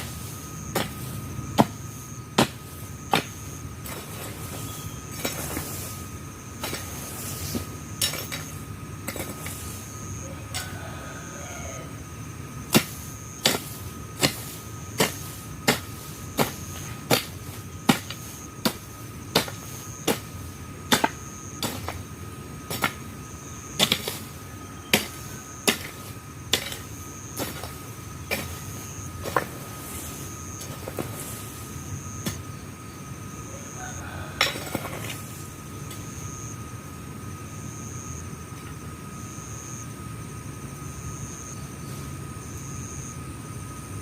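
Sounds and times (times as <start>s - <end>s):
hand tool chopping into soil: 0.7s - 1.8s, 2.4s - 5.9s, 12.7s - 20.3s, 20.9s - 22.0s, 22.7s - 23.0s, 23.8s - 24.3s, 24.9s - 29.7s.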